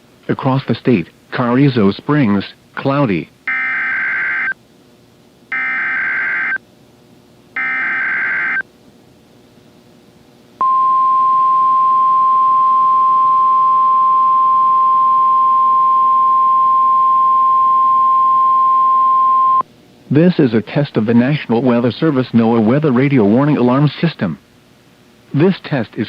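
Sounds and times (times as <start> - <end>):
steady warning alarm tone: 3.5 - 4.6, 5.5 - 6.6, 7.6 - 8.6, 10.6 - 19.6
digital header tone bursts: 7.6 - 8.6.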